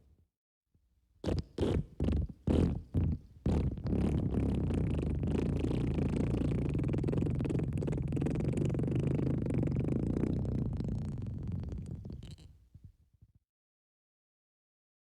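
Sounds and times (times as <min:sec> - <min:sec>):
cartoon wet fart: 0:01.2 - 0:12.6.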